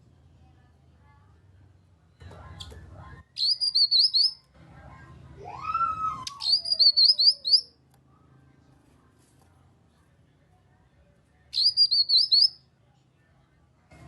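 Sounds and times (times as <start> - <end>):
bird chattering: 3.4 - 4.4, 11.6 - 12.6.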